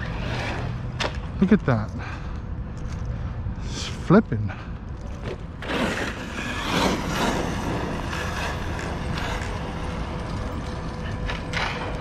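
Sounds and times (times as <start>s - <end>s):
electric motor whine: 5.6s - 12.0s.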